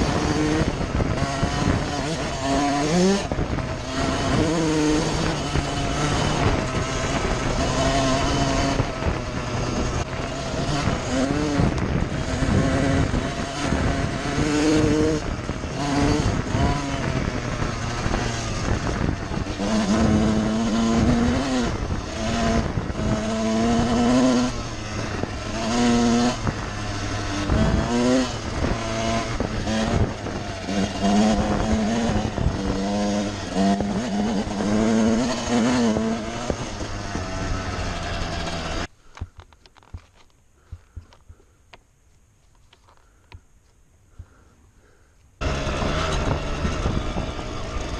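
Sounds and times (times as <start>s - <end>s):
motocross bike engine revving: 0.0s - 38.9s, 45.4s - 47.9s.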